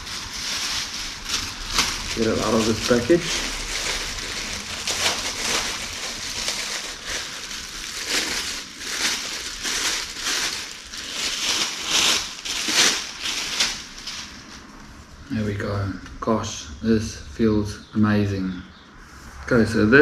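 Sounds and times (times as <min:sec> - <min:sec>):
bubble wrap crinkling and rustling: 0:00.0 - 0:15.6.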